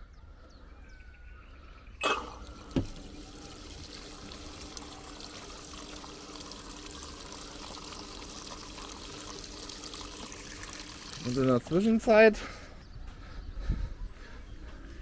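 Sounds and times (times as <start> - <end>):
water rushing into tub: 2.0 - 11.8.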